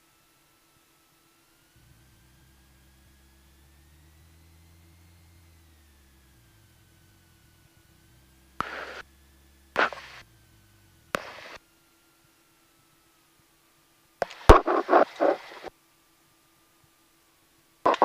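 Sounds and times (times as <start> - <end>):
radio click: 8.6 - 9.0, 9.8 - 10.2, 11.2 - 11.6, 14.2 - 15.7
radio static bursts: 8.6 - 9.0, 9.8 - 10.2, 11.2 - 11.6, 14.2 - 15.7
person speaking over radio: 14.5 - 15.7.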